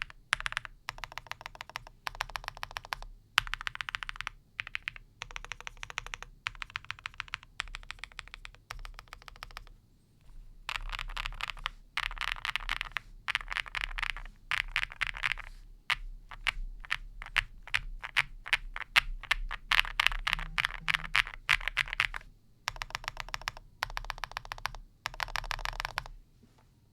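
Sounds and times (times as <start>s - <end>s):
typing on mechanical keyboard: 0.0s - 9.8s, 10.7s - 26.1s.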